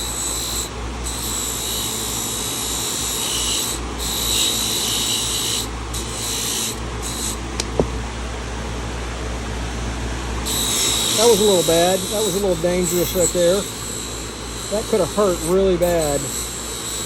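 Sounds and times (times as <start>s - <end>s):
knife blade rasping on grinding wheel: 0.0s - 7.5s, 10.4s - 17.0s
grinder whining: 0.0s - 8.0s, 10.0s - 17.0s
sharp clicks: 7.6s - 7.8s.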